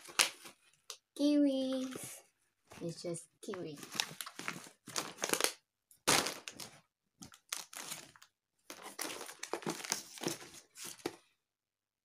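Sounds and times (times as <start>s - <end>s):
plastic bag crinkling: 2.8s - 11.2s.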